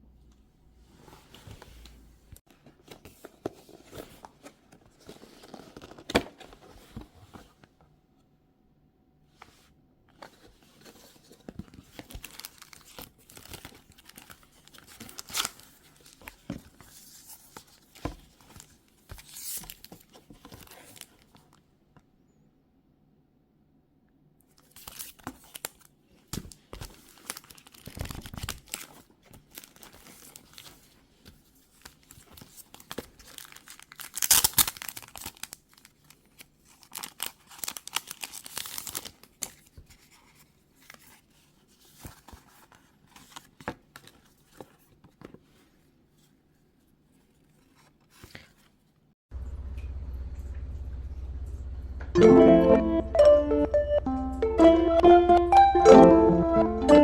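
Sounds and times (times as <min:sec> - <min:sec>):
packaging tearing and crinkling: 0:11.7 - 0:16.4, 0:24.6 - 0:30.7, 0:31.8 - 0:39.7.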